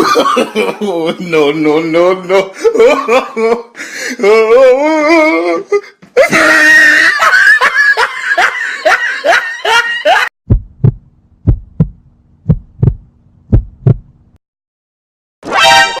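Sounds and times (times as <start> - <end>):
person laughing: 2.2 - 10.3
heartbeat thumps: 10.4 - 14.3.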